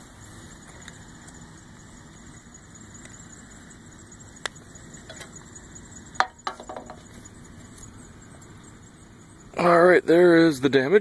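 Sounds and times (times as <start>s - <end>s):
steady low background noise: 0.0s - 11.0s
sharp clicks and knocks: 6.2s - 7.2s.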